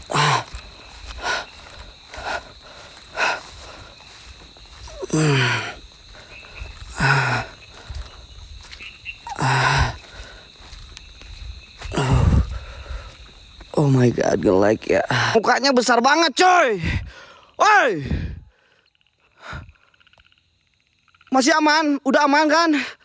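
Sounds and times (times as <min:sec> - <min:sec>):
man groaning: 0:00.0 - 0:00.6, 0:04.9 - 0:05.8, 0:06.9 - 0:07.5, 0:09.3 - 0:10.0, 0:11.9 - 0:12.5, 0:16.8 - 0:18.4
soft breaths: 0:00.0 - 0:08.6, 0:09.2 - 0:13.5.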